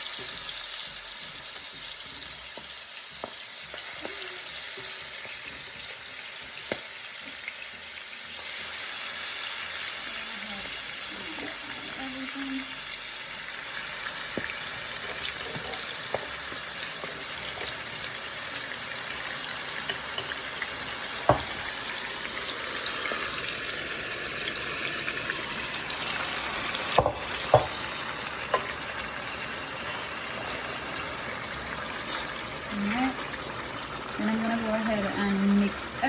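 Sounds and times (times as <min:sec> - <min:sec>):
livers sizzling in hot oil: 0:00.0 - 0:36.0.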